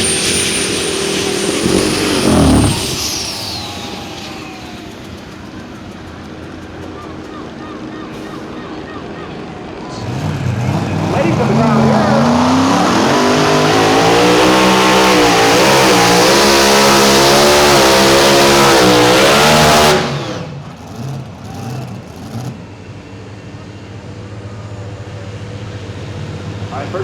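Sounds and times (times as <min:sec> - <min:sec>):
steady engine sound: 0:00.0 - 0:18.0
engine at full throttle: 0:00.0 - 0:27.0.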